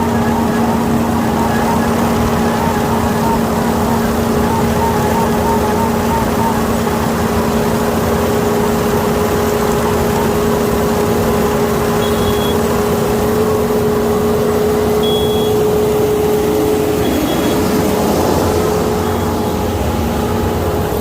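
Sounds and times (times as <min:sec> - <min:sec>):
combine harvester engine hum: 0:00.0 - 0:21.0
short high beeps: 0:12.0 - 0:12.6, 0:14.9 - 0:17.8.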